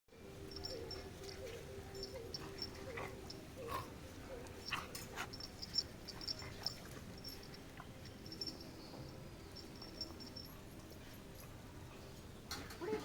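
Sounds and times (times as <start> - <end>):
faint high chirping: 0.2 - 12.2.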